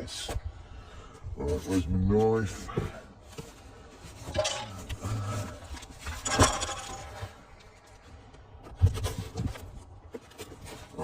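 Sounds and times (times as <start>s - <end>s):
box packaging scraping and clattering: 2.4s - 7.4s, 8.8s - 11.0s.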